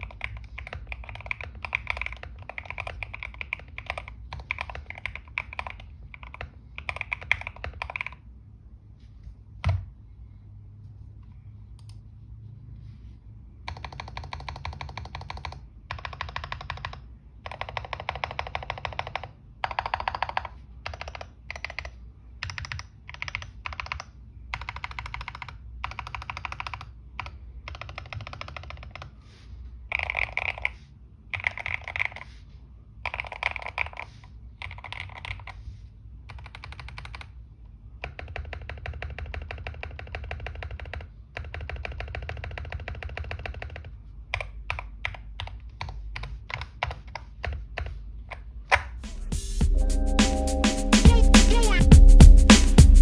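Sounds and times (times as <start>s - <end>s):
mechanical keyboard typing: 0.0s - 8.2s, 13.7s - 29.2s, 29.9s - 32.3s, 33.0s - 35.6s, 36.3s - 37.4s, 38.0s - 48.9s.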